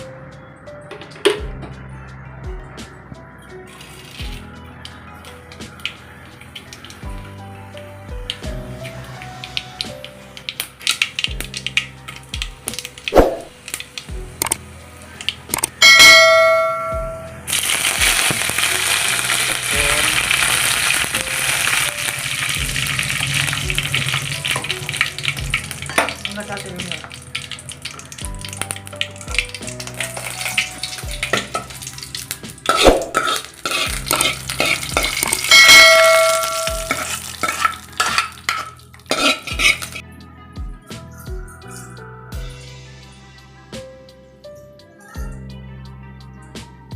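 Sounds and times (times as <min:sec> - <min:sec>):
food sizzling in hot oil: 0:03.7 - 0:04.5, 0:05.2 - 0:40.0
ringing metal clang: 0:15.8 - 0:17.3, 0:35.5 - 0:37.1
spoon scraping a pan: 0:30.0 - 0:40.0.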